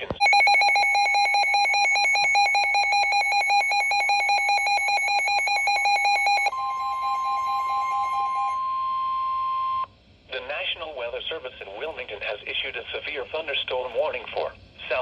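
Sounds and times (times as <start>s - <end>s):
pulsing warbling alarm tone: 0.2s - 9.8s.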